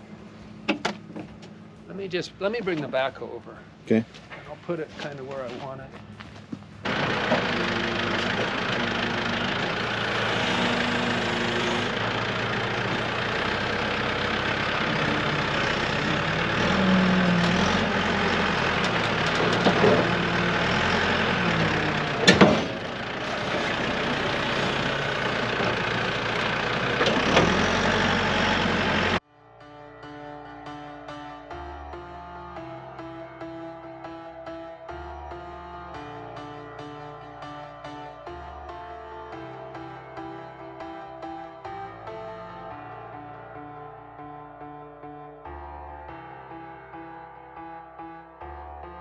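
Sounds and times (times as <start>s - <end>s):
diesel engine running: 0.0s - 29.2s, 29.9s - 44.6s.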